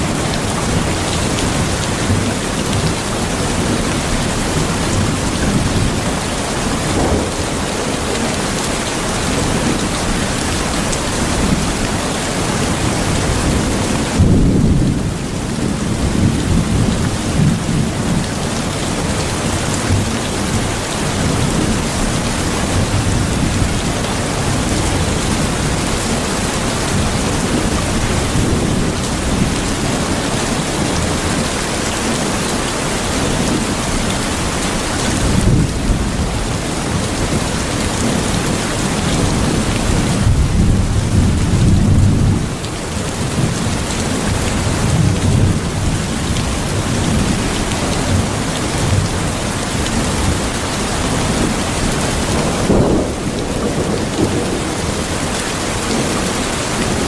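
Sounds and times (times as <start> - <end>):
thunder rumbling: 0.0 - 18.5, 50.0 - 57.0
heavy rain falling: 0.0 - 57.0.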